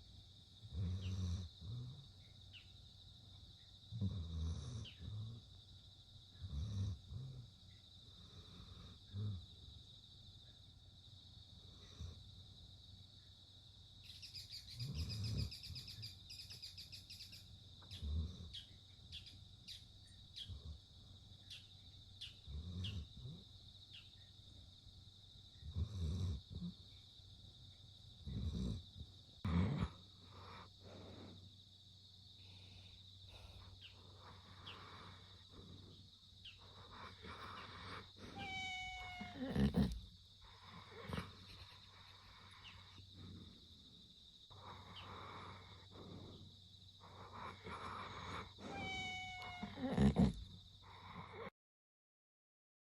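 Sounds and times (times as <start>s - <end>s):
puppy snoring: 0.6s - 2.2s, 3.9s - 5.5s, 6.3s - 9.6s, 11.6s - 12.3s, 14.5s - 16.1s, 17.8s - 18.8s, 22.3s - 23.5s, 25.6s - 27.0s, 28.2s - 31.4s, 32.4s - 51.5s
puppy whining: 36.9s - 40.0s, 47.2s - 50.4s.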